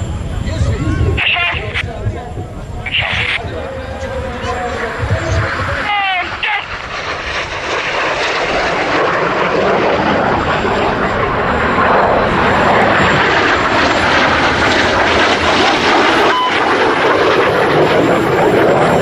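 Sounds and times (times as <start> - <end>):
jets flying past: 0.0 - 19.0.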